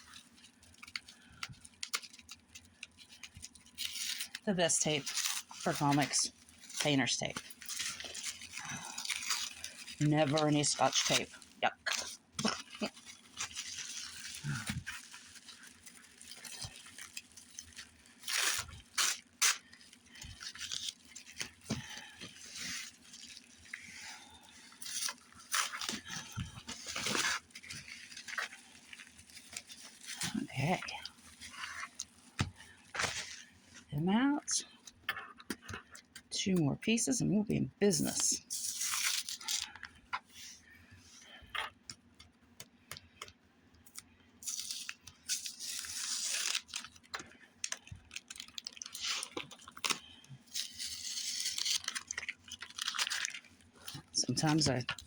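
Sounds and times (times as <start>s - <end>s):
tape peeling: 0.0s - 33.5s, 44.4s - 54.1s
packaging rustling: 0.0s - 33.9s, 38.0s - 40.9s, 41.6s - 55.0s
bubble wrap crinkling: 0.0s - 36.4s, 37.6s - 55.0s.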